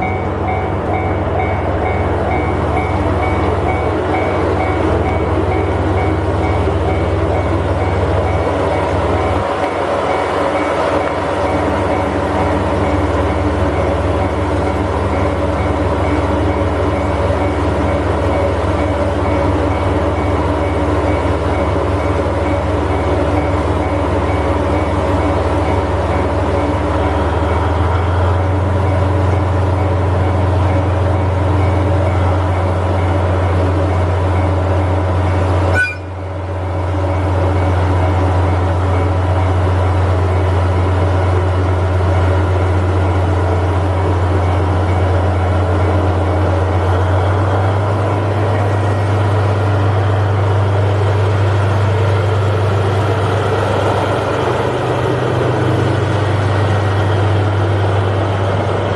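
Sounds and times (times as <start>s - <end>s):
diesel locomotive drone: 0.0s - 58.9s.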